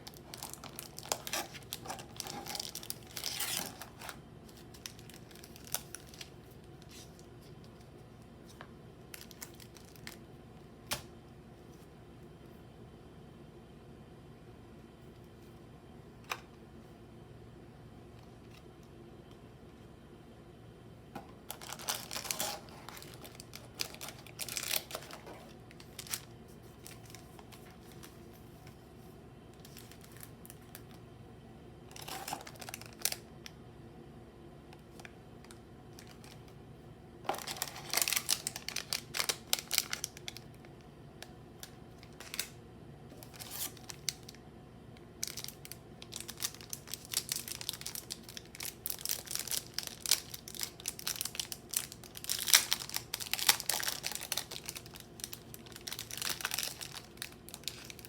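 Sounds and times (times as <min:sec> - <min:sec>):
foil wrappers crinkling and tearing: 0:00.0 - 0:07.9, 0:09.1 - 0:10.2, 0:21.5 - 0:28.3, 0:29.6 - 0:30.9, 0:31.9 - 0:33.3, 0:34.9 - 0:36.4, 0:37.2 - 0:40.7, 0:41.6 - 0:44.4, 0:45.2 - 0:58.0.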